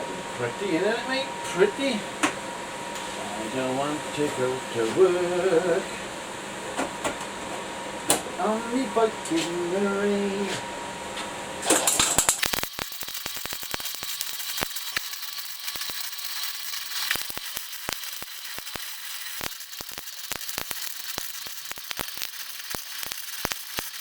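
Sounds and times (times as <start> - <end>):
welding arc crackling: 11.7 - 24.0.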